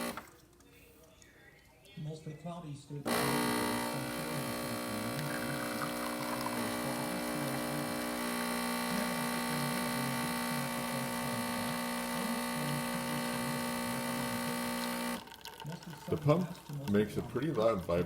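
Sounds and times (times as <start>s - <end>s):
espresso machine pump buzzing: 0.0s - 0.2s, 3.1s - 16.2s.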